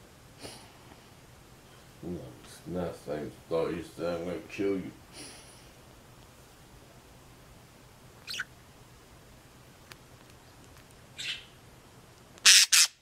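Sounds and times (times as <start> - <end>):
budgerigars chirping: 8.2 - 8.5, 11.2 - 11.5.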